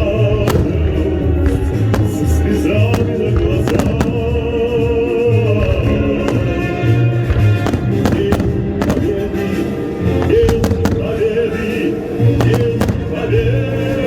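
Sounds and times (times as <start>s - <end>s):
fireworks bangs: 0.0s - 14.0s
loud music: 0.0s - 14.0s.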